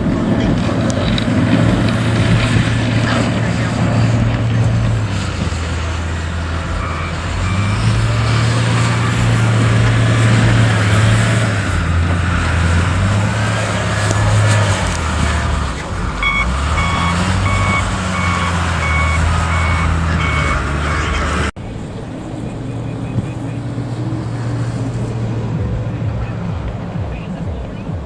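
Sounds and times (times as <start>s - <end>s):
heavy vehicle engine droning: 0.0s - 28.0s
reversing alarm beeps: 16.2s - 21.2s.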